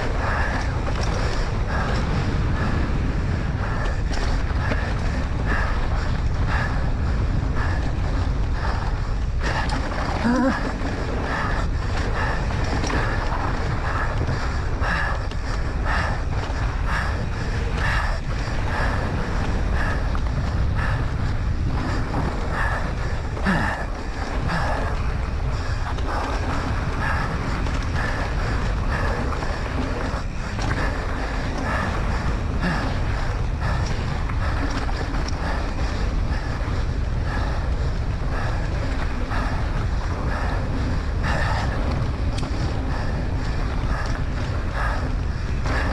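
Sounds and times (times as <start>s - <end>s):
bike tyres rumbling: 0.0s - 45.9s
wind rushing over microphone: 0.0s - 45.9s
heavy breathing: 8.5s - 13.2s, 13.8s - 25.2s, 27.0s - 34.7s.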